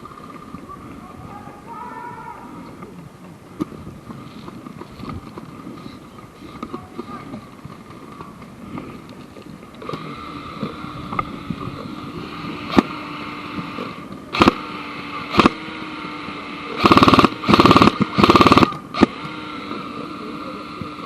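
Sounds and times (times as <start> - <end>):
steady hum: 0.0 - 21.0
airsoft gun shots and bursts: 14.3 - 15.7, 16.8 - 19.3.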